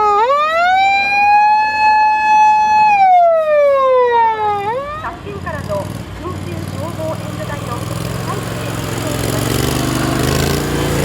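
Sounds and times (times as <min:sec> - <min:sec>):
fire engine siren wailing: 0:00.0 - 0:05.2.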